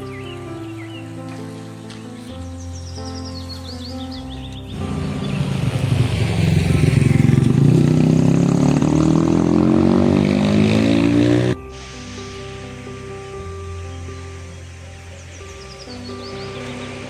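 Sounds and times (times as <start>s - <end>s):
vehicle engine accelerating: 4.7s - 11.7s.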